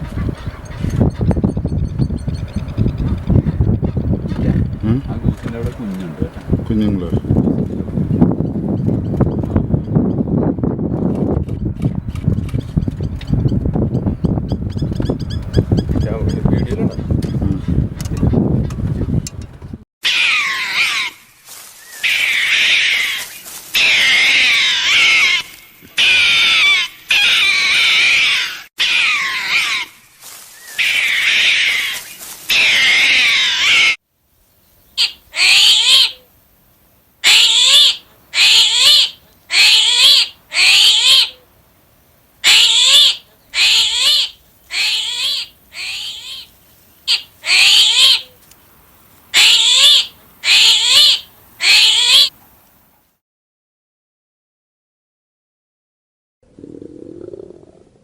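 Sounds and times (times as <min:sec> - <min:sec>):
chorus of young animals crying: 0:20.0 - 0:21.2, 0:22.0 - 0:29.9, 0:30.7 - 0:34.0, 0:35.0 - 0:36.2, 0:37.2 - 0:41.4, 0:42.4 - 0:46.5, 0:47.1 - 0:48.3, 0:49.4 - 0:52.3
single animal crying: 0:20.0 - 0:21.2, 0:21.9 - 0:30.0, 0:30.6 - 0:34.0, 0:35.0 - 0:36.2, 0:37.2 - 0:41.4, 0:42.4 - 0:46.5, 0:47.1 - 0:48.4, 0:49.4 - 0:52.3.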